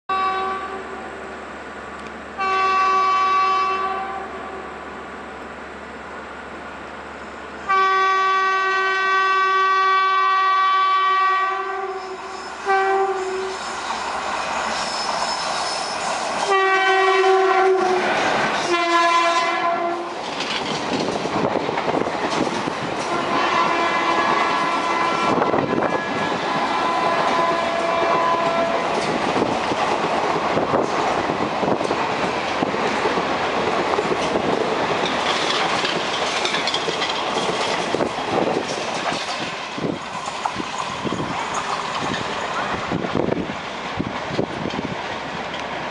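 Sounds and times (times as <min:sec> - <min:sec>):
locomotive horn blasts: 0:00.1 - 0:01.0, 0:02.4 - 0:04.7, 0:07.7 - 0:13.8, 0:16.4 - 0:20.2, 0:23.1 - 0:29.0
train coaches clickety-clack: 0:07.8 - 0:45.9.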